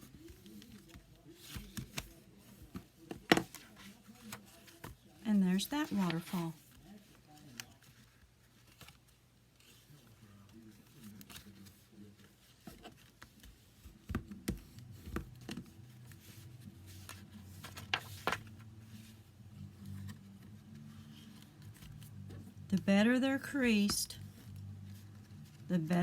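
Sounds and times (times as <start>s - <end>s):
cardstock flaps clicking and rustling: 16.9s - 18.6s.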